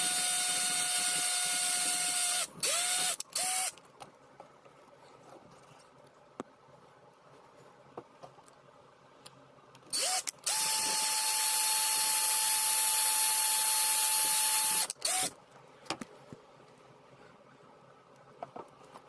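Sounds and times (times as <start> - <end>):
electric drill drilling into metal: 0.0 - 3.7, 10.0 - 15.3.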